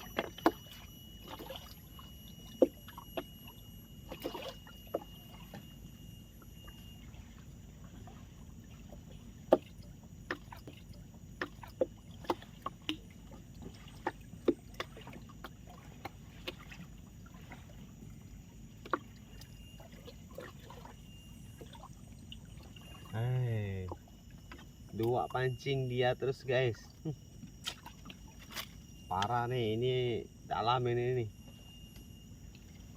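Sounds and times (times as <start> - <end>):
low background rumble: 0.0 - 30.6.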